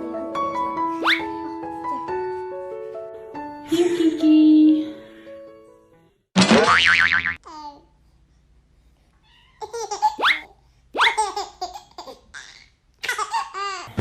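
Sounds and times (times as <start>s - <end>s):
baby squealing: 9.6s - 13.9s
baby giggling: 9.6s - 14.0s.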